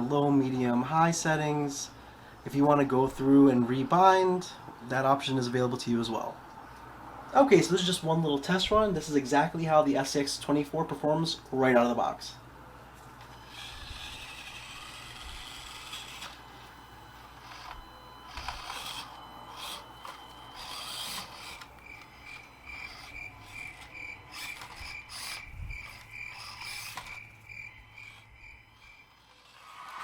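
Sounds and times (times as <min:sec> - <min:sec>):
small motor and gears whining: 0:13.0 - 0:30.0
pulsing high tone: 0:13.3 - 0:30.0.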